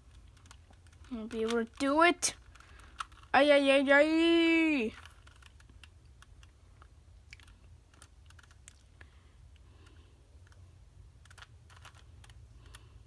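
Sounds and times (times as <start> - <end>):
plastic puzzle cube clicks: 0.1 - 3.3, 4.9 - 9.1, 11.2 - 12.9.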